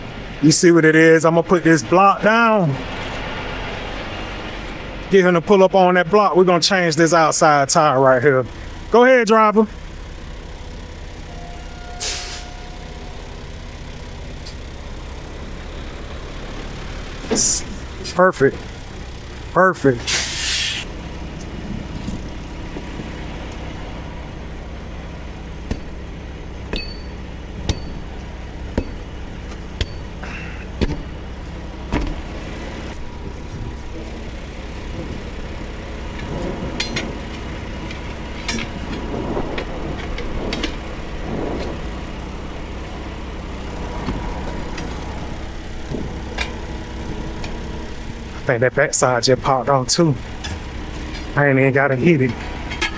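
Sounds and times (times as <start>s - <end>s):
truck engine idling: 0.0s - 52.9s
metal clanks of tire tools: 11.2s - 13.2s, 20.0s - 22.2s, 25.6s - 32.3s, 36.1s - 41.9s, 43.9s - 46.7s, 49.4s - 51.5s, 52.1s - 52.9s.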